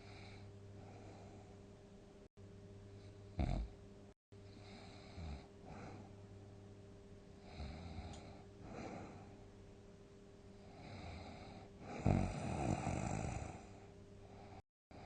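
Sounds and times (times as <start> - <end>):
low electrical hum: 0.0 - 15.0
person snoring: 3.3 - 3.7, 7.4 - 9.4, 10.6 - 15.0.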